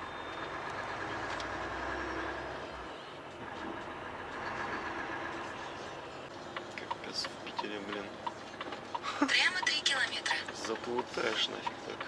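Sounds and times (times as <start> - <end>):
truck running heard from cab: 0.0 - 7.4.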